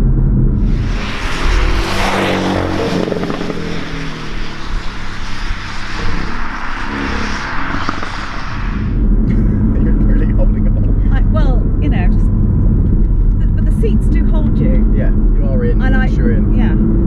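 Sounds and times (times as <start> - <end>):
road and wind noise: 0.0 - 17.0
car engine pulling under load: 0.6 - 9.0.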